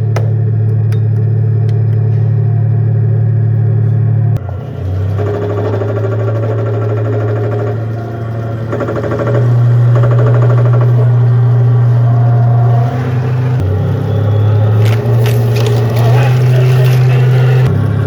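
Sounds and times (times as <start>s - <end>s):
low engine rumble: 0.0s - 18.0s
fluttering whir: 4.4s - 17.7s.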